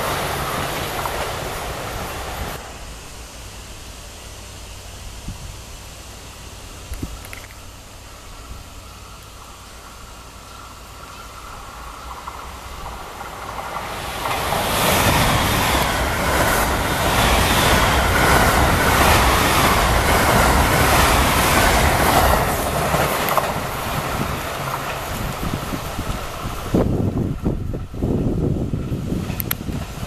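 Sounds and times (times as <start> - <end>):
electric train passing: 0.0 - 30.0
train wheels clattering: 10.5 - 26.9.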